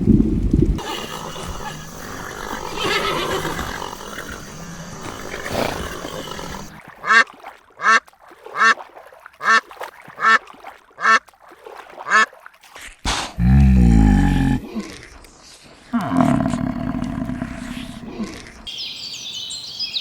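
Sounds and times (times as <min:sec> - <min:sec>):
wind outdoors: 0:00.0 - 0:06.8
duck quacking: 0:06.5 - 0:08.0, 0:10.2 - 0:10.4, 0:11.0 - 0:11.2.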